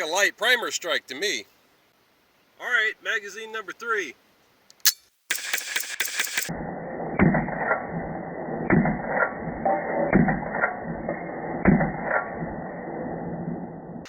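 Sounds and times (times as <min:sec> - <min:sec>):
muffled mechanical clanks and creaks: 0:07.1 - 0:13.0.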